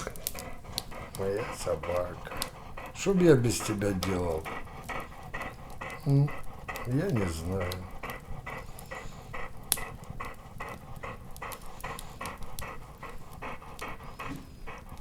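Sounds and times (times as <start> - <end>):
dog panting: 0.0 - 15.0.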